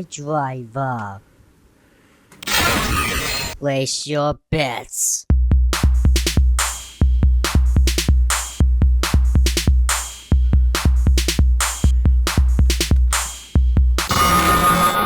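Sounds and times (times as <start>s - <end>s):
drum machine beat: 5.3s - 14.2s.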